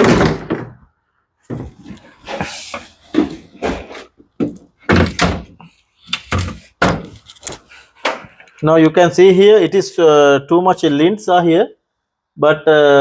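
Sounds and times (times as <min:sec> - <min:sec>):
knocks and clunks of panels: 0:00.0 - 0:00.9, 0:01.5 - 0:07.2.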